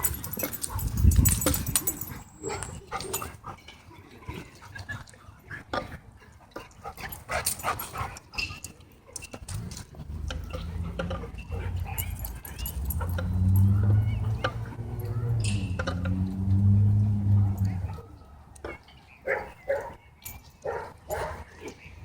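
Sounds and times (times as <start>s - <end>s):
dogs yipping and whimpering: 0.0s - 3.4s, 10.4s - 15.8s.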